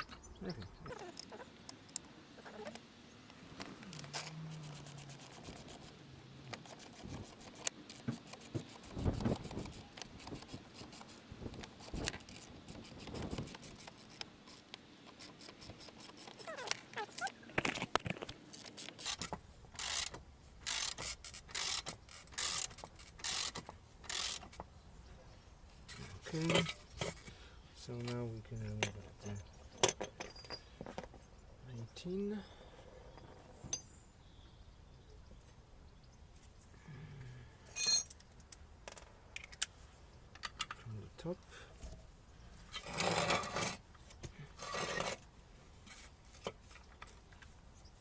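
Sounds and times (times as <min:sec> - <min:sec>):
ratchet wrench clicking: 0:04.0 - 0:05.9, 0:06.5 - 0:16.5, 0:19.8 - 0:24.4
metal tools knocking and scraping: 0:28.8 - 0:31.1, 0:37.8 - 0:38.2.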